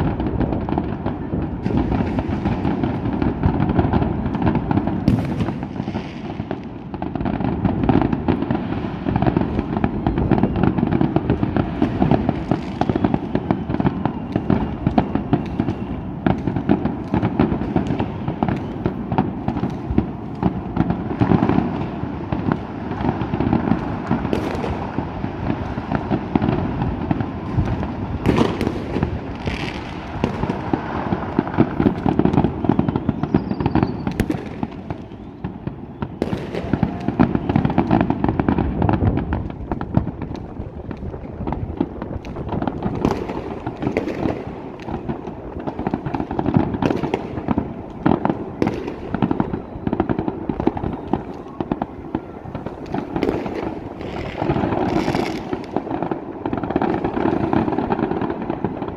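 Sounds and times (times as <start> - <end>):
fireworks crackling and banging: 0.0 - 58.9.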